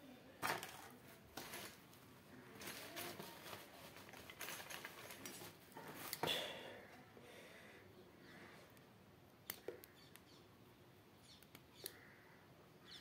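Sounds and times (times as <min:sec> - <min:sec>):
hands handling wires and parts: 0:00.4 - 0:06.4.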